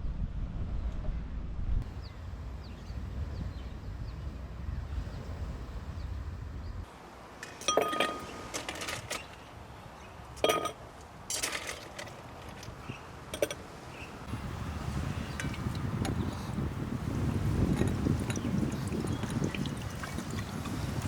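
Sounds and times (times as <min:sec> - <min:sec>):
steady low rumble: 0:00.0 - 0:06.9
hard objects clinking together: 0:07.5 - 0:09.4, 0:10.4 - 0:12.8.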